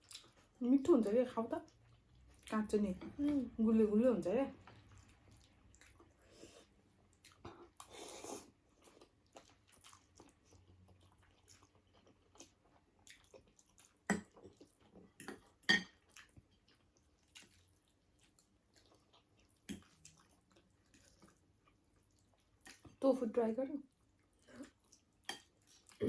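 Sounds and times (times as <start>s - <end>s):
chewing and biting food: 0.0s - 0.6s, 4.6s - 23.0s.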